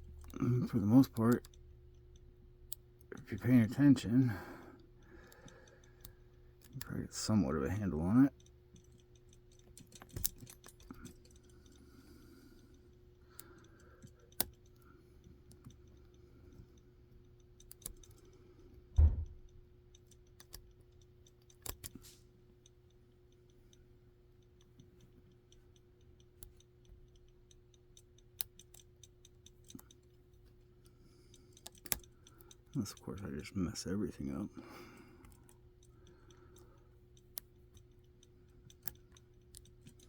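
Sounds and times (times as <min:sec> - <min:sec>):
faint hum: 0:00.0 - 0:40.0
lock pick clicking in padlock: 0:07.7 - 0:12.2, 0:17.5 - 0:22.0, 0:26.2 - 0:30.6, 0:31.2 - 0:33.8
knock: 0:19.0 - 0:19.4.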